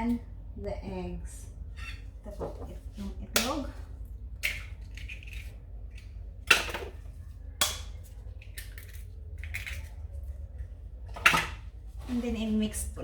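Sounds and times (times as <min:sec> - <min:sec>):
eggs cracking against bowl: 0:04.3 - 0:10.0.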